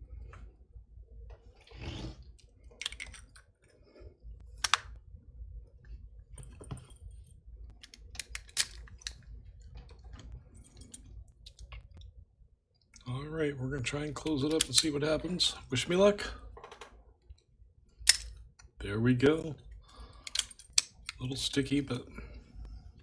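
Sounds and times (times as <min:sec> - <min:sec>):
padlock parts clicking: 0:02.8 - 0:03.4, 0:04.5 - 0:05.0, 0:06.4 - 0:09.3, 0:14.2 - 0:15.0, 0:18.0 - 0:18.7, 0:19.8 - 0:21.3.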